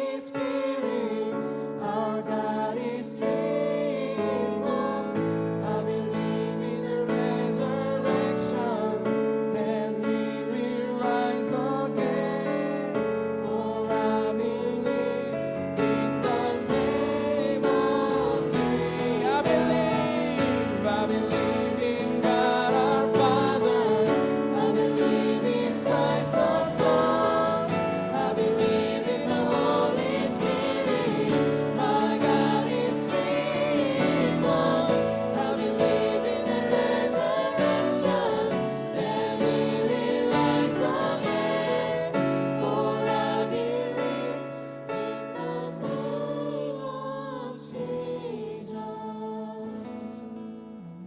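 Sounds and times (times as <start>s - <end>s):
group singing worship song: 0.0s - 51.0s
instrumental accompaniment: 15.5s - 43.7s.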